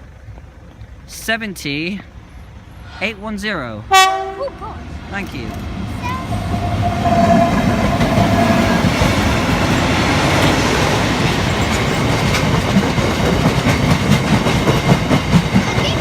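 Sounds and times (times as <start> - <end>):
freight train passing: 0.0 - 16.0
wheels clattering over rails: 4.5 - 16.0
held tone: 6.0 - 9.0.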